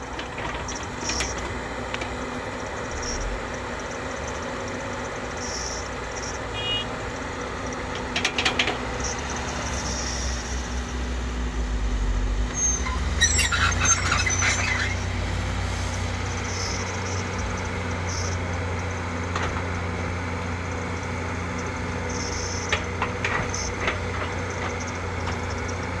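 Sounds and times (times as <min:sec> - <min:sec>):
excavator diesel hum: 0:00.0 - 0:26.0
metallic squeaks and clicks: 0:12.5 - 0:15.1.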